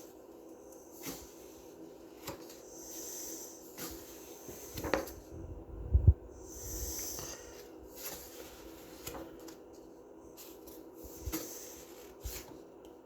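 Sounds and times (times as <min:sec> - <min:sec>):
paper pages rustling: 0:07.2 - 0:12.7.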